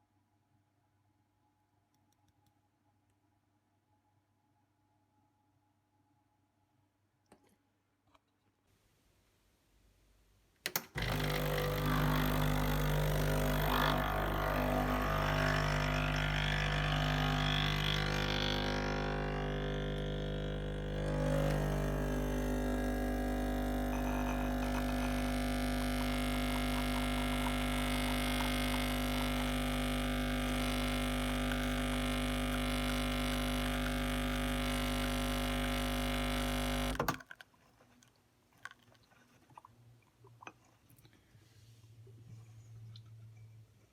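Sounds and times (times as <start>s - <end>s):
espresso machine pump buzzing: 11.0s - 37.1s.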